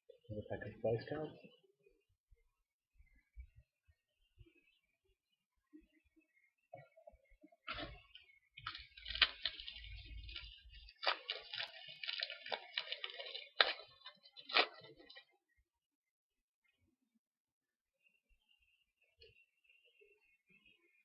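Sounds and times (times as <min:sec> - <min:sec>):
foil wrapper tearing and crinkling: 0:08.6 - 0:15.3.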